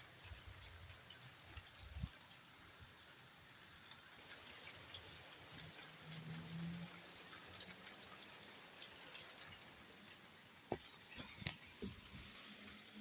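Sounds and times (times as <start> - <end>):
heavy rain: 0.0 - 13.0
drips and taps: 3.2 - 12.8.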